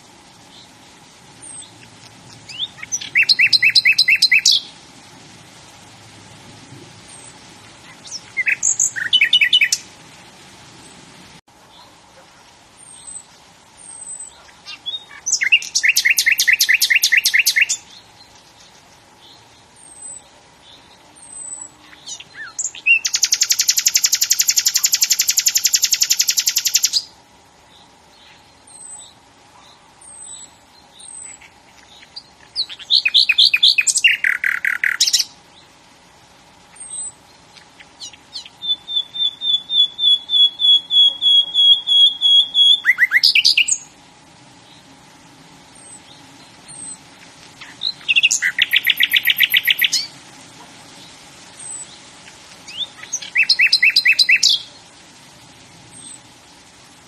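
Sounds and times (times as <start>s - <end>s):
songbird trilling: 1.4s - 4.7s, 7.1s - 9.9s, 12.8s - 27.1s, 30.0s - 35.3s, 36.7s - 43.9s, 45.8s - 47.0s, 47.6s - 50.1s, 52.7s - 54.7s
soft high chirps: 47.6s - 50.1s.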